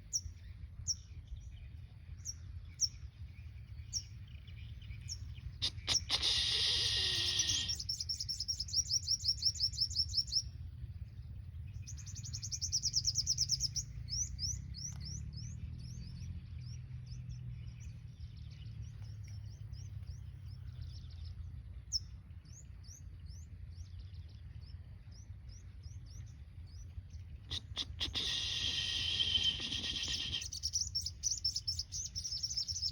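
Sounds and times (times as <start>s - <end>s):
birds chirping: 0.0s - 32.9s
birds trilling: 4.0s - 16.2s, 18.9s - 32.9s.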